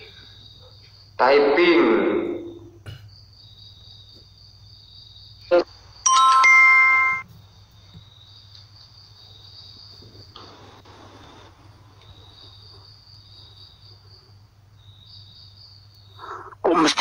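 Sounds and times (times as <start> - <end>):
crickets chirring: 0.0 - 17.0
electronic chime chord: 6.1 - 7.2.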